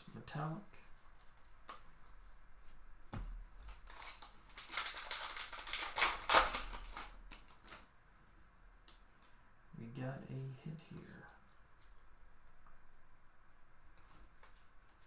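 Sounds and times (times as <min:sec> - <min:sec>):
wrapper crinkling and tearing: 0:03.7 - 0:07.9.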